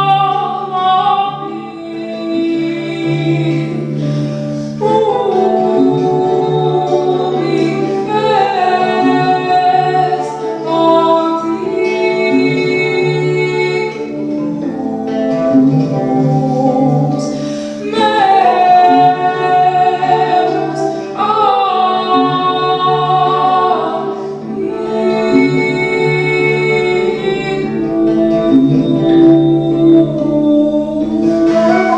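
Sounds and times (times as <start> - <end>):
woman singing held phrases: 16.4 - 31.9.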